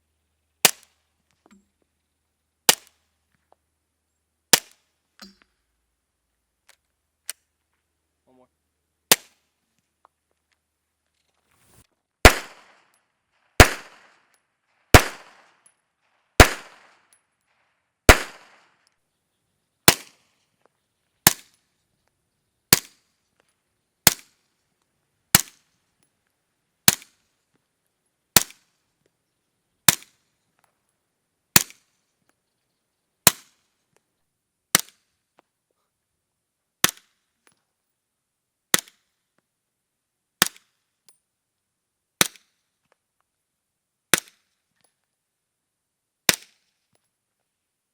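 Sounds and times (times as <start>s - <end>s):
suppressed pistol shots: 12.2s - 12.8s, 13.6s - 14.1s, 14.9s - 15.5s, 16.4s - 17.0s, 18.1s - 18.6s.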